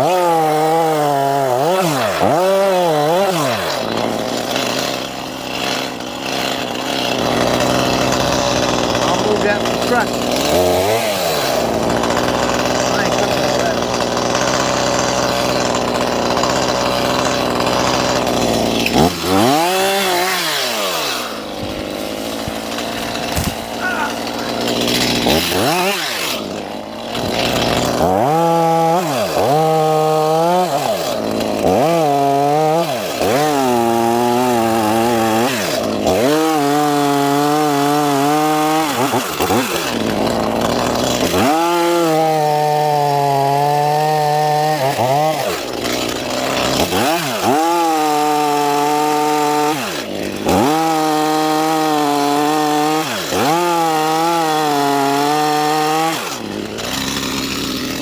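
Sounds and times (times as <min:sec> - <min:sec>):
chainsaw cutting wood: 0:00.0 - 0:58.0.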